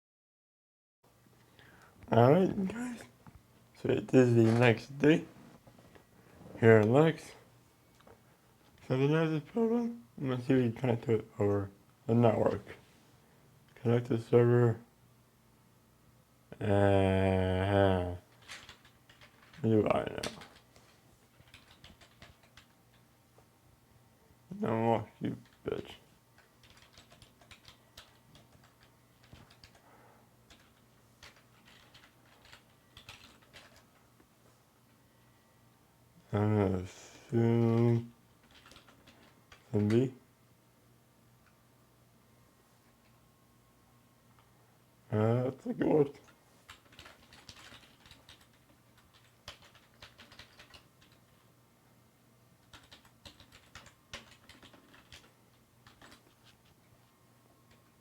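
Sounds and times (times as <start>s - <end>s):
faint low hum: 1.1s - 58.0s
keyboard typing: 18.3s - 23.1s, 26.4s - 29.8s, 30.5s - 34.0s, 37.6s - 40.1s, 46.2s - 51.5s, 52.6s - 56.8s.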